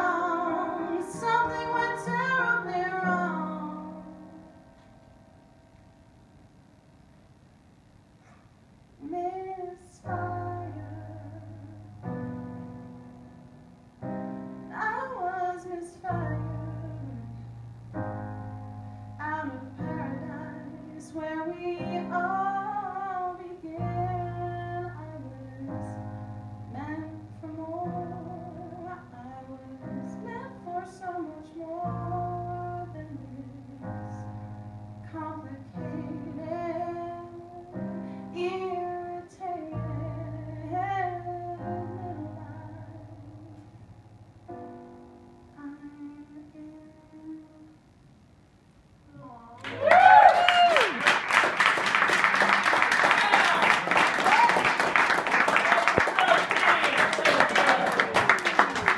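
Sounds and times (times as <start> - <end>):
woman singing slow melody: 0.0 - 4.8, 9.0 - 12.3, 14.7 - 17.6, 19.2 - 43.9, 45.5 - 47.9.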